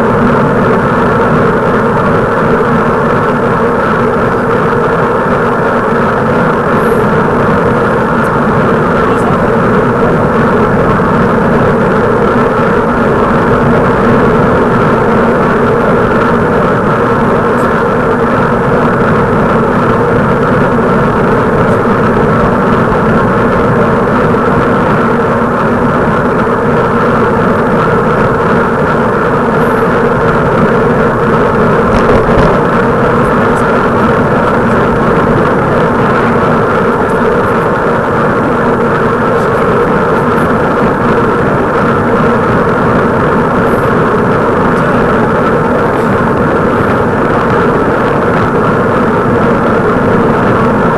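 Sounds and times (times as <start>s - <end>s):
bicycle road rumble: 0.0s - 50.9s
wind noise while cycling: 0.0s - 50.9s.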